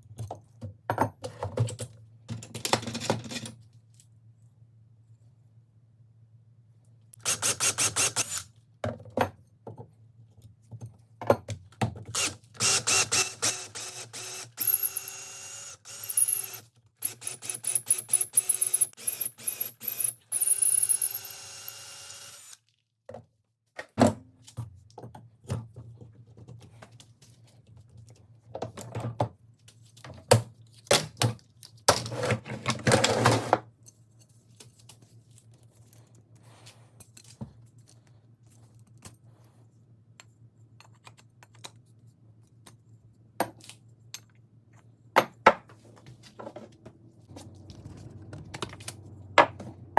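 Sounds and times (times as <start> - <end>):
power tool whining: 12.2 - 22.6.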